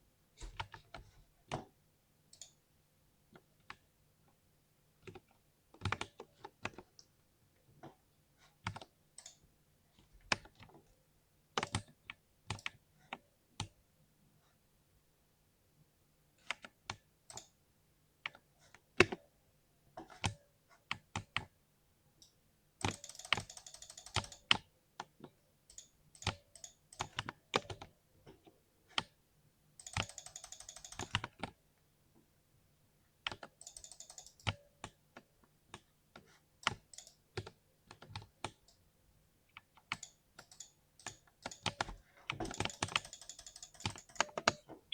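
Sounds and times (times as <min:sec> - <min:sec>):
typing on mechanical keyboard: 0:05.0 - 0:07.0, 0:11.6 - 0:13.7, 0:22.8 - 0:25.1, 0:25.7 - 0:27.9, 0:29.8 - 0:31.6, 0:33.2 - 0:35.0, 0:36.6 - 0:38.8, 0:39.6 - 0:44.7.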